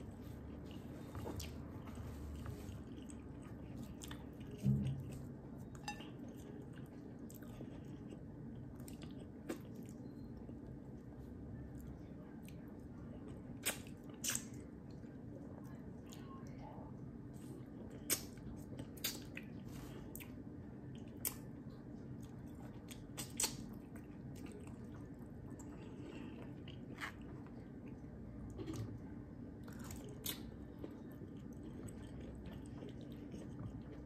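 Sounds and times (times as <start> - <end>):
wet squishy chewing: 0.0 - 15.2, 17.4 - 34.0
steady low hum: 0.0 - 34.0
mouth smacks and clicks: 13.6 - 14.6.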